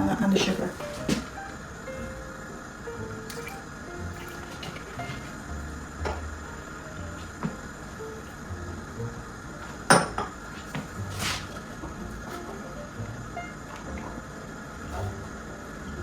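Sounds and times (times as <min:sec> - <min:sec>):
utensils clinking against a saucepan: 0:09.9 - 0:10.4.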